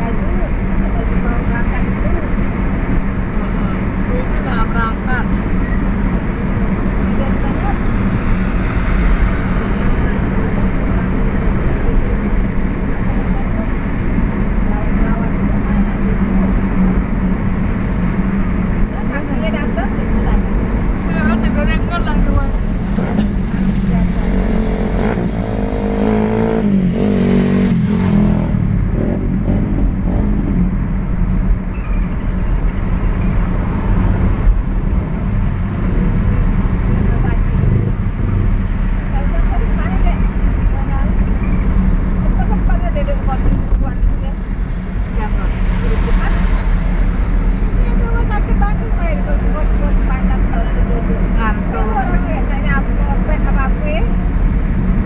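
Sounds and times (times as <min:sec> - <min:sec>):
vehicle engine and road noise: 0:00.0 - 0:55.0.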